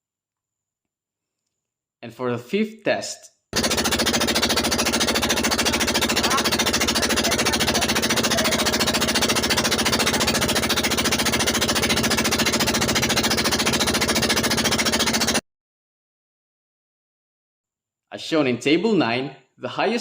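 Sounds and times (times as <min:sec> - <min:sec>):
boat engine running: 0:03.6 - 0:15.4.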